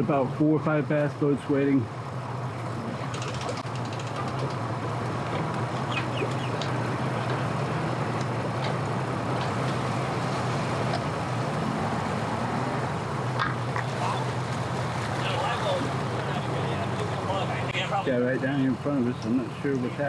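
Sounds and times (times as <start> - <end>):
engines humming: 0.0 - 20.0
faint high bird chirps: 5.9 - 6.6.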